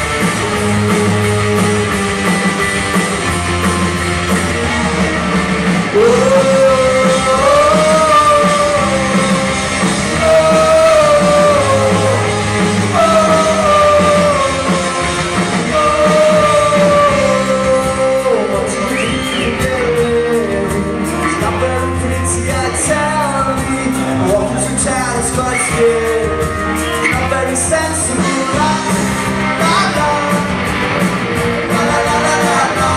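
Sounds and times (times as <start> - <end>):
live rock band playing: 0.0 - 32.9
singer holding long notes: 4.4 - 24.6.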